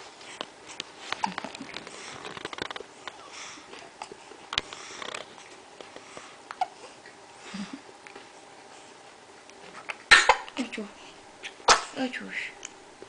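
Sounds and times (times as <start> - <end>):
baby breathing and sniffing: 4.6 - 6.4
baby hiccups: 10.1 - 10.5.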